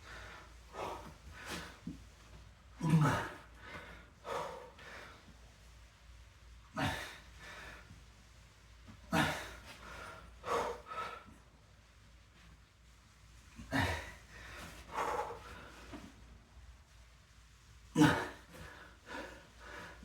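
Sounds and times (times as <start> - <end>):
man breathing hard: 3.2 - 5.5, 9.1 - 11.5, 13.7 - 16.2.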